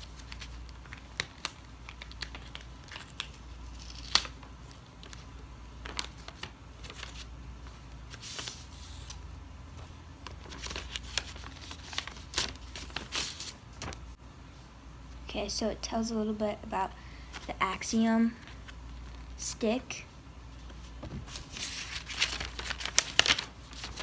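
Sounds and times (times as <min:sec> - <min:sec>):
paper rustling and tearing: 0:00.0 - 0:04.4, 0:10.4 - 0:14.0, 0:21.1 - 0:24.0
paper clicks and crinkles: 0:00.0 - 0:09.2, 0:10.2 - 0:14.0, 0:20.8 - 0:24.0.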